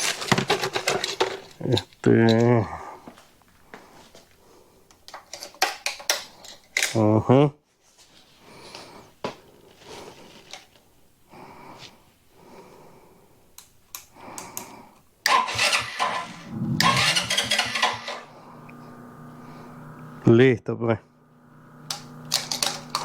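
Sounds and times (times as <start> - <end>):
small engine cranking and running: 15.3 - 20.3, 21.8 - 23.0.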